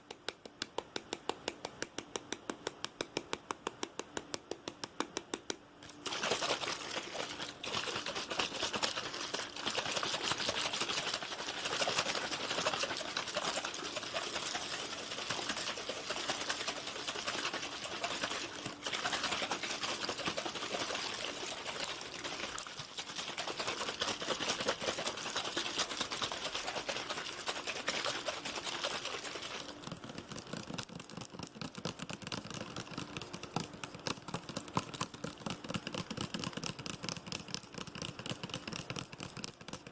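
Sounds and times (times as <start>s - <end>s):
rapid tapping on microphone: 0.0s - 5.6s, 29.9s - 39.9s.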